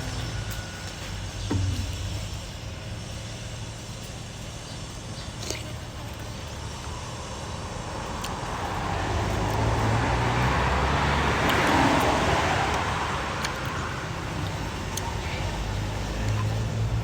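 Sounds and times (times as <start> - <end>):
traffic rumble: 0.0 - 17.0
vehicle passing close by: 6.9 - 17.0.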